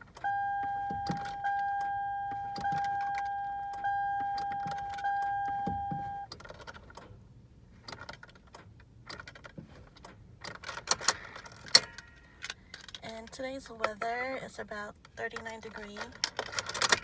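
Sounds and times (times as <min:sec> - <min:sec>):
car warning chime: 0:00.0 - 0:06.3, 0:11.7 - 0:12.4
keys and ignition switch clicking: 0:00.0 - 0:07.2, 0:07.8 - 0:13.0, 0:15.3 - 0:17.0.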